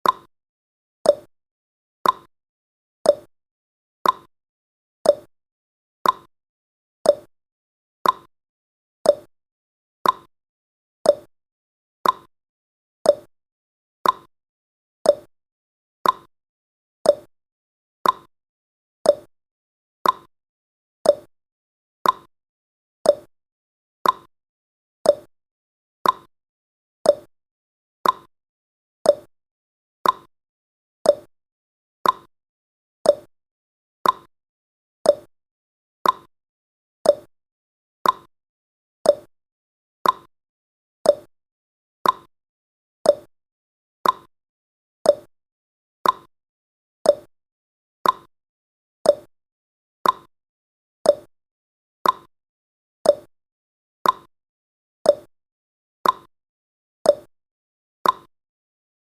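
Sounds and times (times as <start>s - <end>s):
clock ticking: 34.0s - 34.3s, 40.0s - 40.3s, 44.0s - 44.3s.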